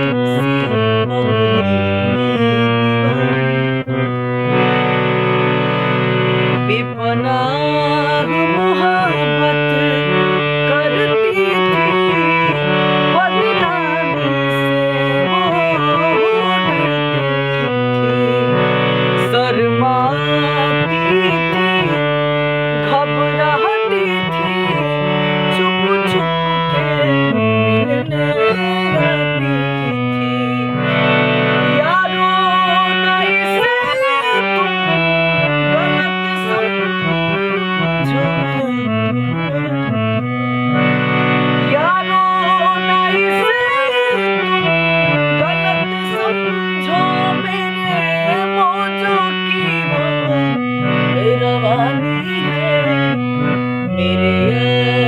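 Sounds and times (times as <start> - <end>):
sustained bass notes: 0.0 - 23.6, 34.9 - 43.1, 49.1 - 55.0
reedy melody instrument: 0.0 - 55.0.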